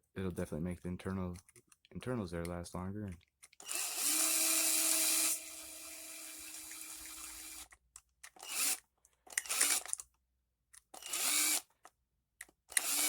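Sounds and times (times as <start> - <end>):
power screwdriver whining: 3.6 - 7.7, 8.3 - 10.0, 10.9 - 11.7, 12.7 - 13.0.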